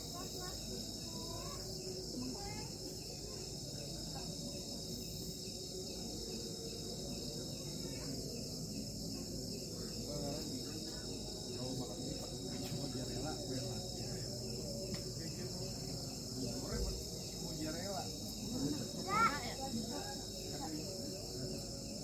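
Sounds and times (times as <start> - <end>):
crickets chirring: 0.0 - 22.0
faint low murmuring: 0.0 - 22.0.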